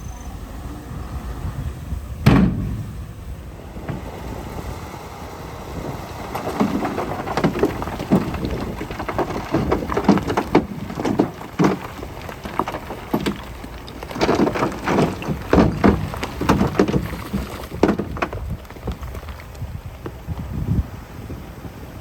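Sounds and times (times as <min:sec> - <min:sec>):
heavy machine engine rumble: 0:00.0 - 0:21.9
loud bang: 0:02.2 - 0:03.5
soil and stones tumbling: 0:02.3 - 0:20.9.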